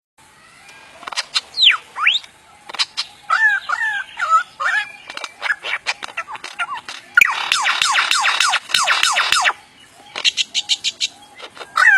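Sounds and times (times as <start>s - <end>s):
talking bird whistling and warbling: 0.4s - 11.9s
sharp clicks: 5.0s - 10.4s.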